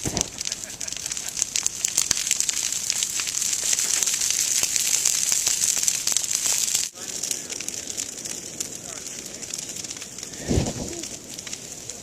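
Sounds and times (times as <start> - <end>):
fire crackling and popping: 0.0 - 12.0
steady hiss: 6.8 - 12.0.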